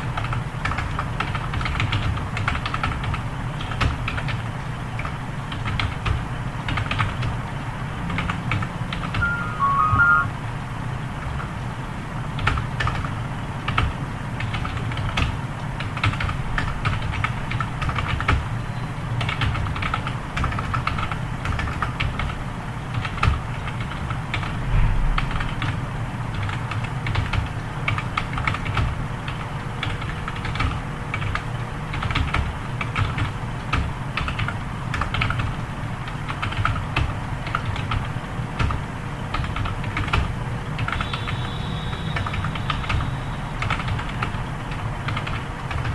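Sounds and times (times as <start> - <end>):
keyboard typing: 8.1 - 10.3, 42.2 - 43.0, 43.6 - 45.9.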